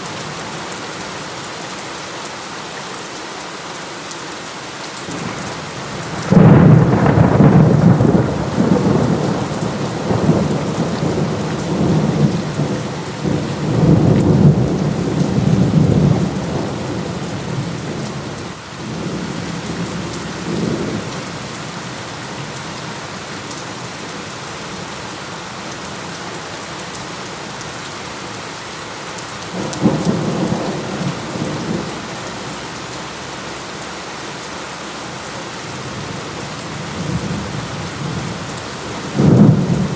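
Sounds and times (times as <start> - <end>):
heavy steady rain: 0.0 - 39.9
thunder rumbling: 5.2 - 21.5, 29.5 - 32.6, 35.8 - 39.9.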